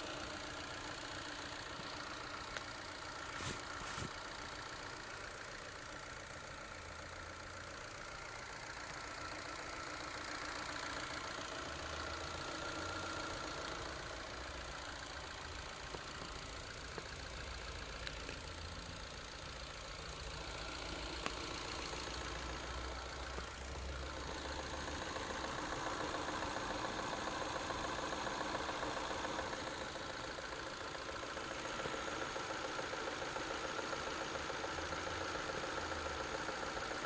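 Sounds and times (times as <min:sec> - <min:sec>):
car engine idling: 0:00.0 - 0:37.0
faint engine ticks: 0:00.0 - 0:37.0.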